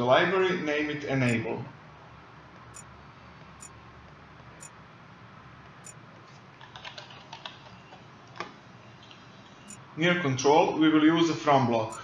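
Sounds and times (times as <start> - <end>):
keyboard typing: 6.6 - 8.0.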